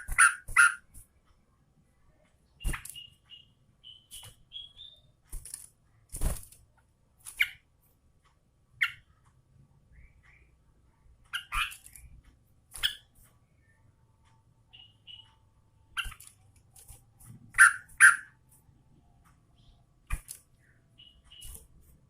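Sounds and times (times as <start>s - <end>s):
bird whistling and chattering: 0.0s - 0.8s, 17.6s - 18.3s.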